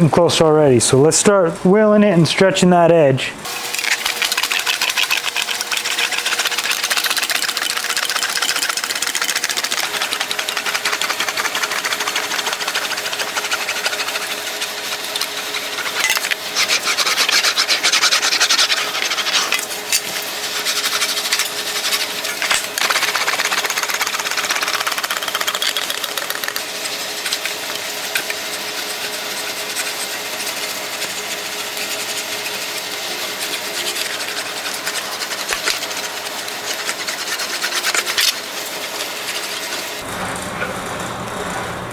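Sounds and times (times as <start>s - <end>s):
metal wheel rolling over sheet metal: 40.0s - 41.9s.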